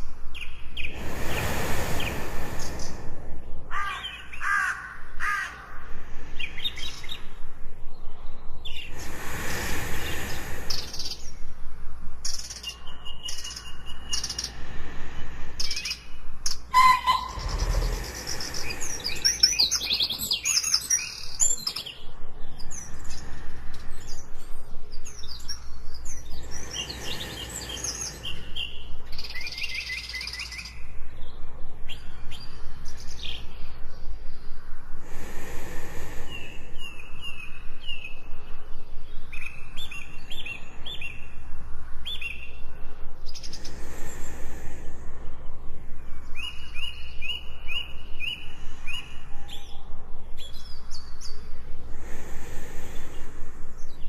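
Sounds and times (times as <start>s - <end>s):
birds chirping and trilling: 0.0s - 54.0s
sleeper breathing: 0.9s - 3.8s, 8.9s - 11.6s, 13.9s - 20.6s, 26.0s - 29.0s, 34.9s - 37.1s, 43.5s - 45.8s, 51.7s - 53.8s.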